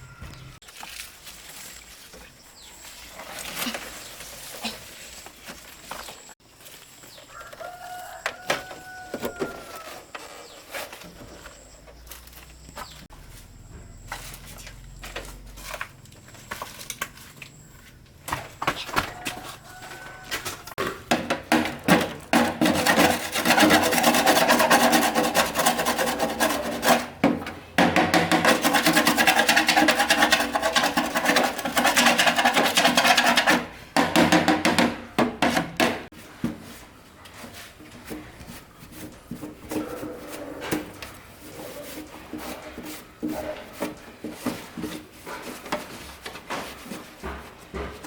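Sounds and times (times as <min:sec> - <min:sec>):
rasping strokes on hard surface: 0:21.5 - 0:34.3.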